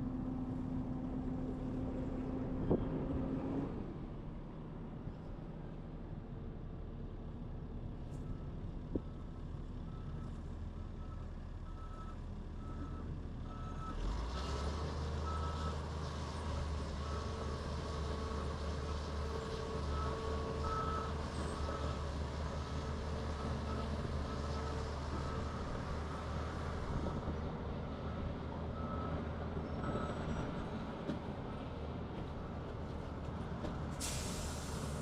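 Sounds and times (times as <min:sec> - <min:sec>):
diesel engine running: 0:16.4 - 0:35.0.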